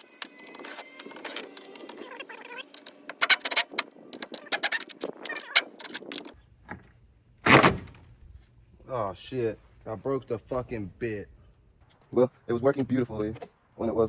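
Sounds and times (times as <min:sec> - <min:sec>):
hand tool clicking and squeaking: 0:00.0 - 0:06.4
quiet steady hum: 0:06.4 - 0:14.0.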